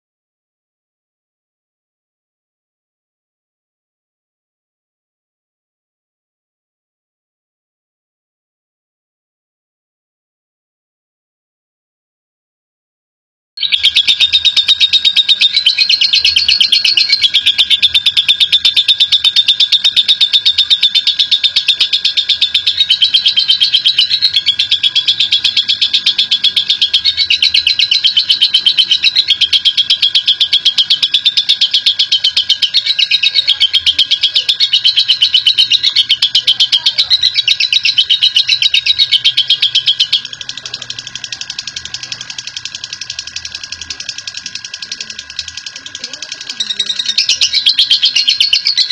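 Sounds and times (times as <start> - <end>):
lovebird chattering trill: 13.6 - 48.9.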